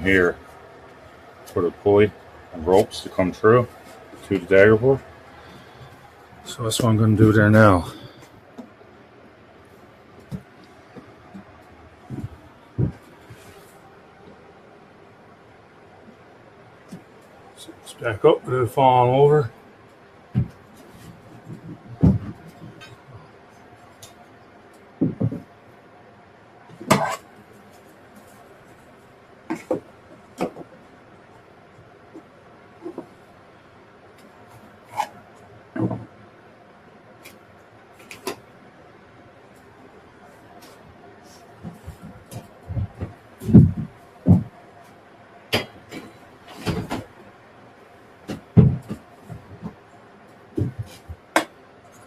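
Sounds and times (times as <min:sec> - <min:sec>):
objects knocking and clunking: 0:10.2 - 0:13.6, 0:20.3 - 0:23.2, 0:25.0 - 0:25.5, 0:29.5 - 0:30.8, 0:34.9 - 0:36.1, 0:41.6 - 0:44.6, 0:45.5 - 0:47.2, 0:48.2 - 0:49.9, 0:50.5 - 0:51.6.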